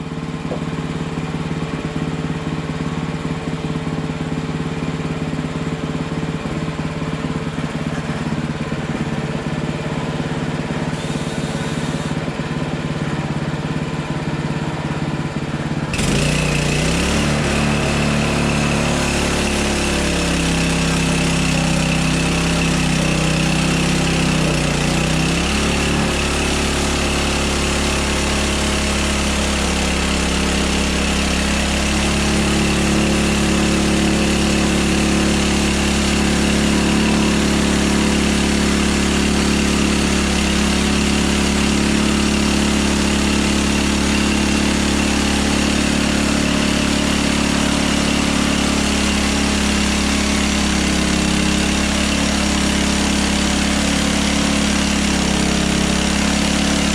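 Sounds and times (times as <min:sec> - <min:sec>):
gas engine running: 0:00.0 - 0:56.9
band saw blade whining: 0:10.5 - 0:12.3.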